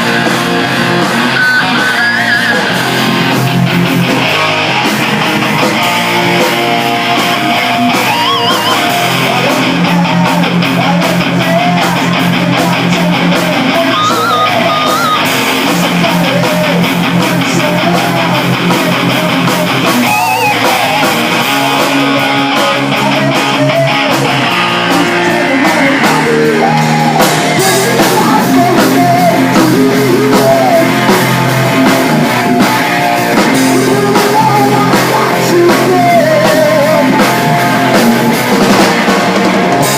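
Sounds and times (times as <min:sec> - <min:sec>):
lead guitar bending notes: 0:00.0 - 0:09.4, 0:13.7 - 0:15.8, 0:20.0 - 0:39.9
bass guitar: 0:00.0 - 0:39.9
distorted electric guitars: 0:00.0 - 0:39.9
drums: 0:00.0 - 0:39.9.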